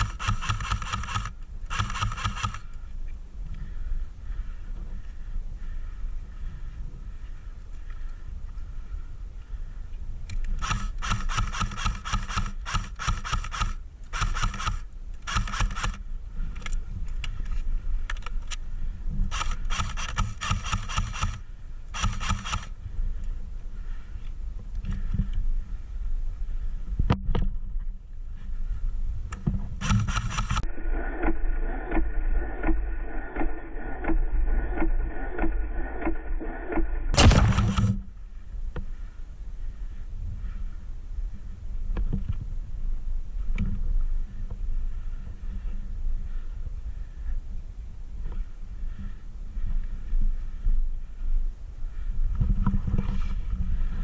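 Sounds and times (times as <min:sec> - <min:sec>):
airsoft rifle full-auto bursts: 0:00.0 - 0:02.7, 0:10.6 - 0:16.0, 0:19.3 - 0:22.7, 0:29.8 - 0:38.1
loud sharp bang: 0:37.2 - 0:38.0.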